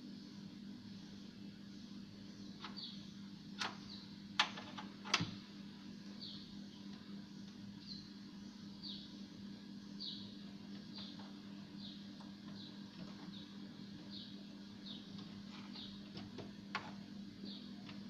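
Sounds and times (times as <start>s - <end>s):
steady low hum: 0.0s - 18.0s
bird chirping: 6.2s - 16.0s.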